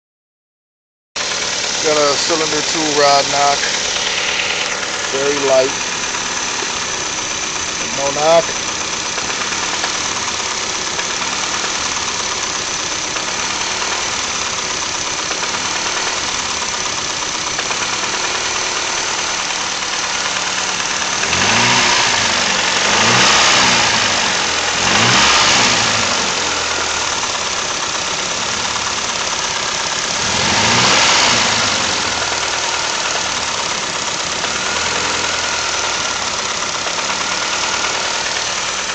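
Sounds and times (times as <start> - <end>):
car engine idling and revving: 1.2 - 38.9
engine knocking: 1.2 - 38.9.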